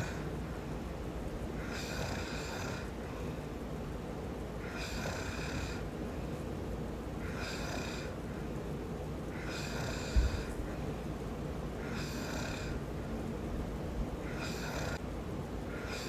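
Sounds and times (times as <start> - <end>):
man snoring: 0.0 - 0.2, 1.6 - 3.0, 4.6 - 5.9, 7.2 - 8.2, 9.3 - 10.6, 11.8 - 12.8, 14.2 - 15.0, 15.8 - 16.0.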